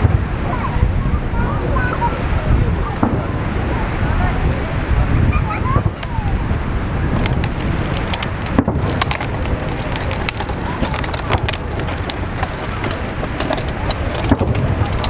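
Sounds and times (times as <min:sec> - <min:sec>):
crowd voices: 0:00.0 - 0:15.0
wind rumble on microphone: 0:00.0 - 0:15.0
fireworks crackling and popping: 0:05.8 - 0:15.0.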